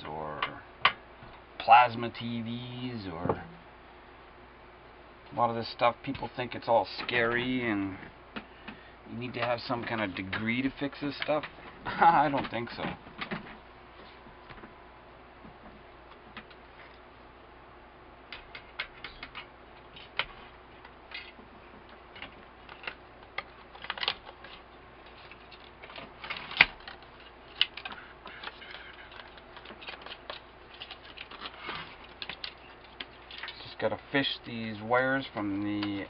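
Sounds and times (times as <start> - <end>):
small parts clicking and tapping: 18.3 - 33.7.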